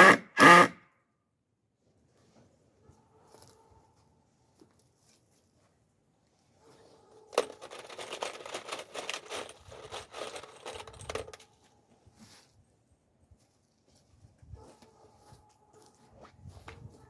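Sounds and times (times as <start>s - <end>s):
small hard objects clattering: 7.4s - 11.4s.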